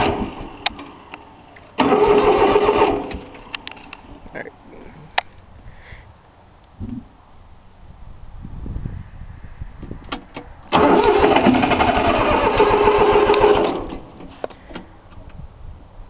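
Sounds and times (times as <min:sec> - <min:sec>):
diesel engine cranking: 0:00.0 - 0:04.2, 0:10.1 - 0:15.3.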